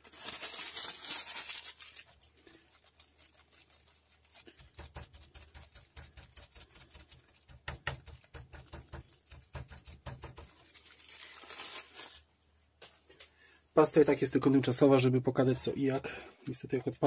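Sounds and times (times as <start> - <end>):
plastic bag clicks and rustles: 0.0 - 4.8, 10.2 - 12.3.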